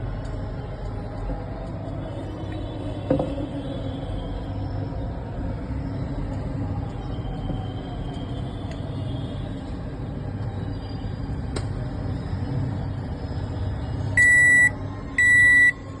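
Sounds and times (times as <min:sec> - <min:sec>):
high microwave beeps: 0:14.2 - 0:15.8.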